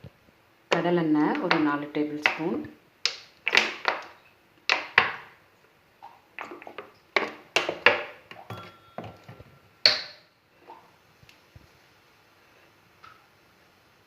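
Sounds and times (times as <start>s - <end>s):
metal spoon clinking on cookware: 8.5s - 9.4s.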